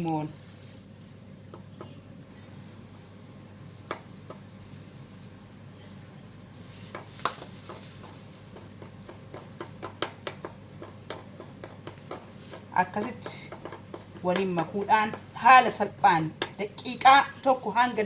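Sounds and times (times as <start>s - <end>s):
spoon scraping bowl: 10.4s - 18.0s.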